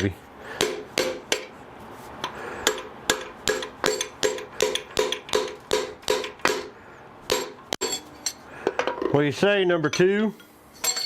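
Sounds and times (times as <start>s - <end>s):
hammer striking metal: 0.6s - 1.6s, 2.6s - 8.4s.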